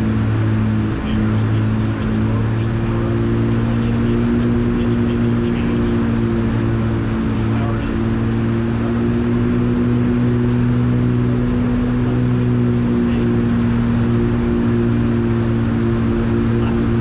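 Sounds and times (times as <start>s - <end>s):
aircraft engines droning in cabin: 0.0s - 17.0s.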